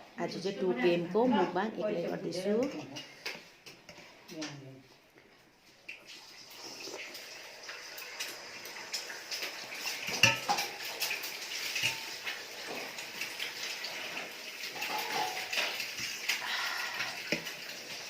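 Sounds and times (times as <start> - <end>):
wet slurping: 6.3 - 7.2
cutlery clinking against a dish: 10.0 - 12.9, 14.8 - 16.0.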